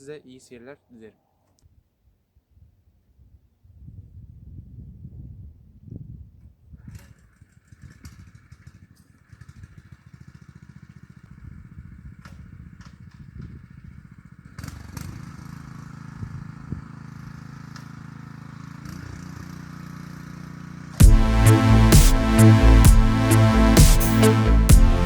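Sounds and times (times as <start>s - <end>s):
tiller engine running: 21.0s - 25.0s.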